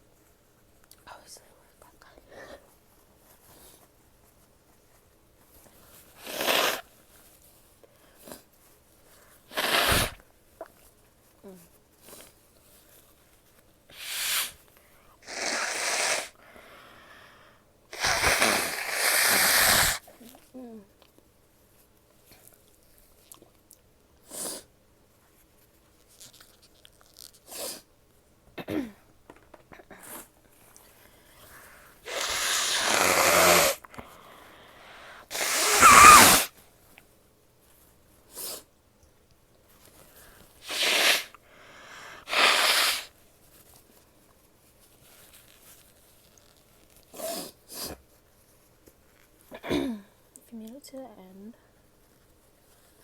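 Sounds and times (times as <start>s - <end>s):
sniffs and breaths: 2.1s - 4.4s, 5.5s - 10.2s, 13.9s - 20.5s, 24.2s - 24.8s, 29.6s - 36.5s, 38.3s - 38.7s, 39.8s - 43.9s, 47.0s - 48.2s
woman sneezing: 9.5s - 10.2s, 18.0s - 20.1s, 32.1s - 33.8s, 35.3s - 36.5s, 42.2s - 43.1s, 49.6s - 50.1s.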